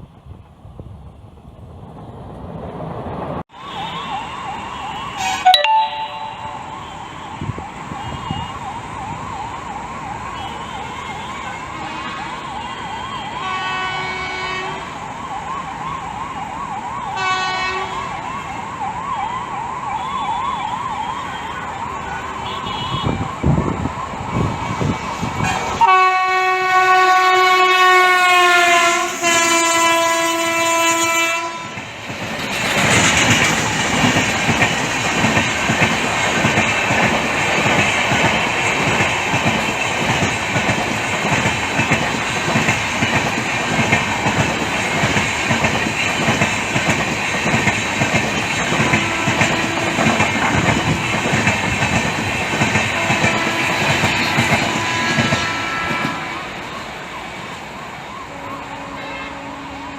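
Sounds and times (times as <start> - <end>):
train horn blasts: 5.1 - 8.5, 13.4 - 14.9, 17.2 - 18.0, 22.4 - 23.2, 25.4 - 31.8, 48.8 - 51.1, 52.9 - 56.8, 58.3 - 59.9
train wheels clattering over rails: 31.6 - 56.4.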